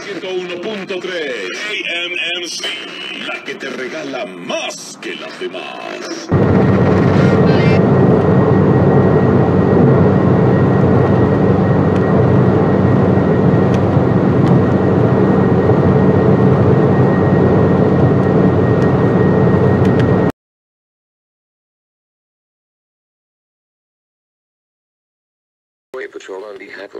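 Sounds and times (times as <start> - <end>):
thin high whine: 0.0 - 20.3
loud engine rumble: 6.2 - 20.3.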